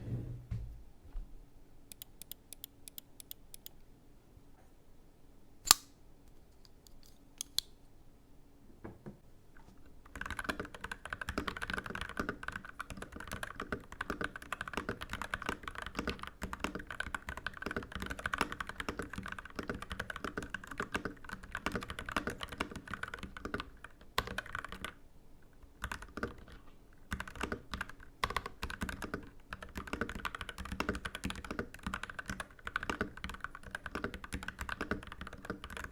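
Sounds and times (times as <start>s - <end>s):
mechanical keyboard typing: 1.9s - 3.7s, 10.1s - 25.0s, 25.8s - 35.9s
loud click: 5.7s - 6.0s.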